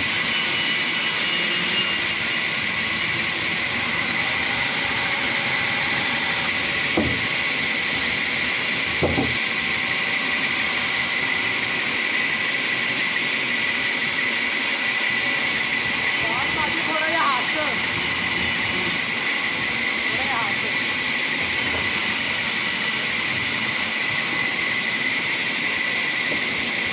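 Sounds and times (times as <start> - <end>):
sawmill machine whine: 0.0 - 26.9.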